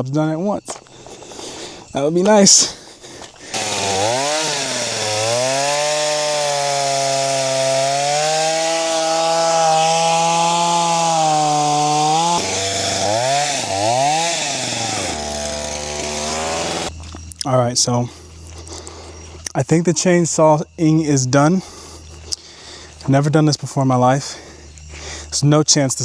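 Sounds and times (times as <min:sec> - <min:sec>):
chainsaw cutting log: 0:03.4 - 0:16.9.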